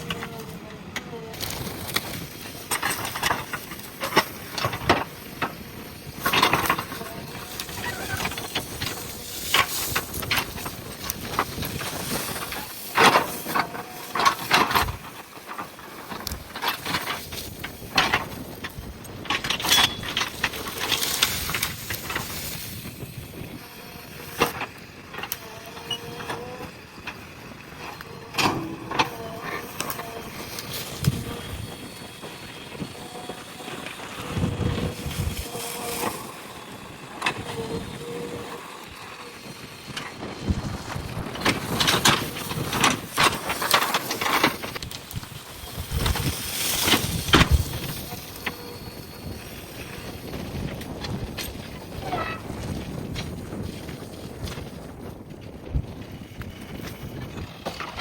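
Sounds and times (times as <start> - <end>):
cracks knocks and scrapes: 39.9 - 48.8.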